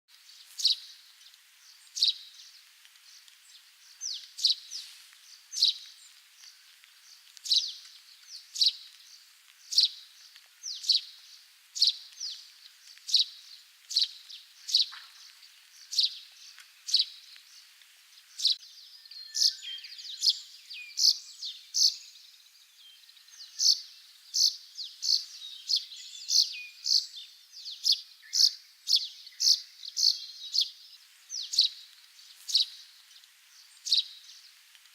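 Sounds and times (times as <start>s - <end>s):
sparrow chirping: 5.5s - 5.9s, 7.5s - 8.9s, 9.7s - 11.2s, 11.8s - 12.4s, 13.1s - 17.2s, 18.4s - 31.8s, 33.6s - 34.3s.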